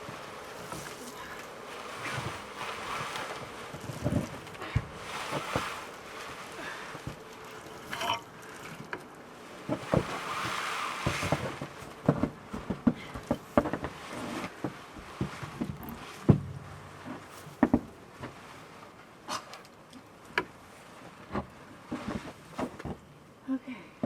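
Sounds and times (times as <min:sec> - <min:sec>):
branches rustling: 0:00.0 - 0:23.1
knocks and thumps of wood: 0:09.7 - 0:18.4.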